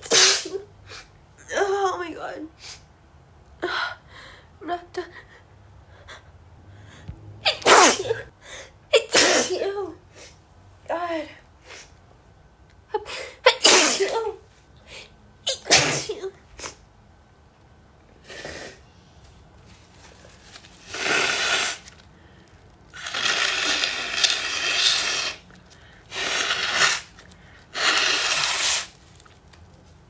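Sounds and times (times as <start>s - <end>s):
woman sneezing: 0.0s - 0.7s, 7.4s - 8.3s, 9.0s - 9.8s, 13.4s - 14.4s, 15.5s - 16.8s.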